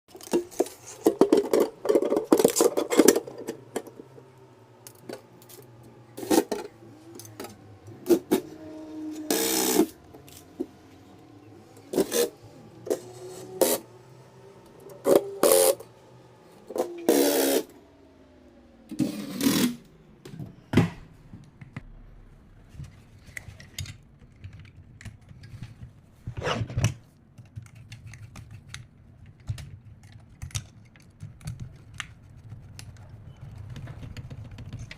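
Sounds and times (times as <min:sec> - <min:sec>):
clicks and knocks of parts: 0:00.1 - 0:04.2, 0:22.8 - 0:26.0, 0:26.7 - 0:34.9
rubbing and scraping of parts: 0:00.1 - 0:17.7, 0:22.6 - 0:34.9
steady hum: 0:00.1 - 0:24.2.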